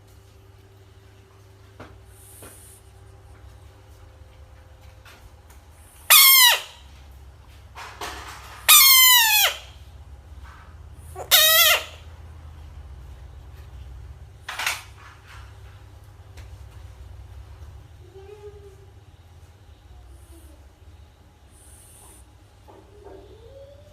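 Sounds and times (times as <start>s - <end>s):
frog screaming: 6.1s - 6.7s, 8.7s - 9.6s.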